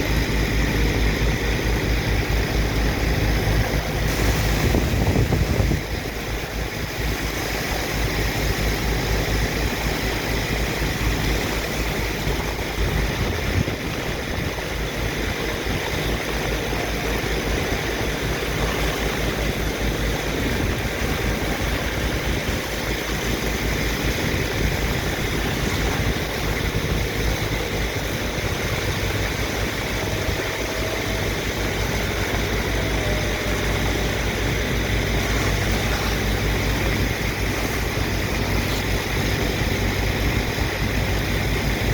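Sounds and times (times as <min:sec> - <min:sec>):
diesel engine throbbing: 0:00.0 - 0:41.9
water rushing: 0:00.0 - 0:41.9.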